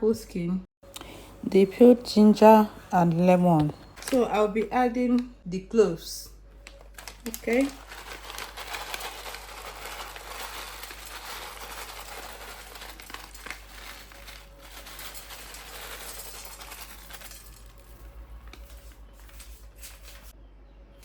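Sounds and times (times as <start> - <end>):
packaging crinkling and rustling: 3.6 - 4.7, 6.6 - 20.4.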